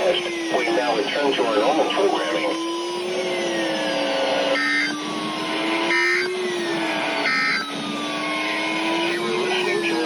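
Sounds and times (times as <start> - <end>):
wavering whistle: 4.5 - 5.0, 5.6 - 6.3, 7.2 - 7.7
raspy digital squawks: 4.6 - 5.0.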